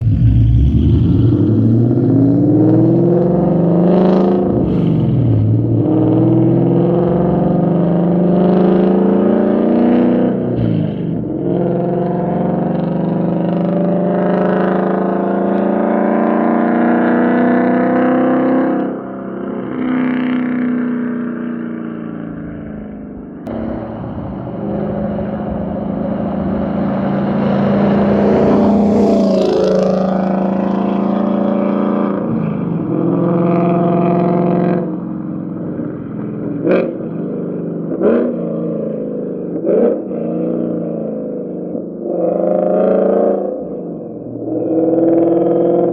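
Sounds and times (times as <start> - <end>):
raspy exhaust: 0.0 - 7.6, 22.4 - 33.9
car engine revving: 0.0 - 45.9.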